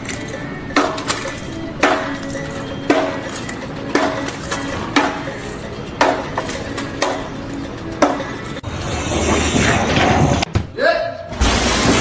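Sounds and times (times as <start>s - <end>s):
background music with steady beat: 0.0s - 8.7s.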